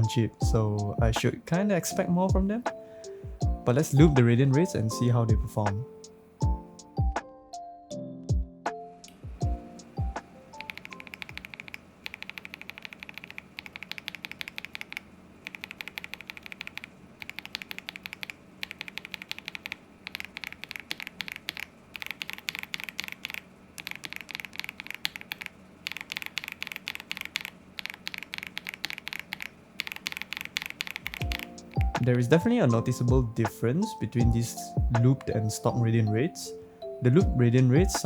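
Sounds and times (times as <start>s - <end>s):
typing on mechanical keyboard: 10.6s - 32.0s.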